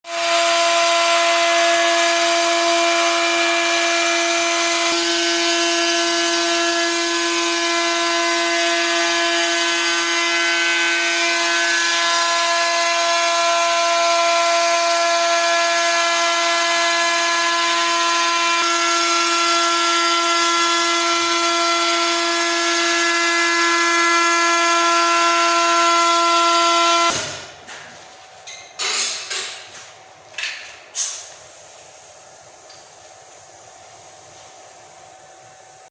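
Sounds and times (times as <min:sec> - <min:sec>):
router spindle high-pitched whine: 0:00.1 - 0:27.2.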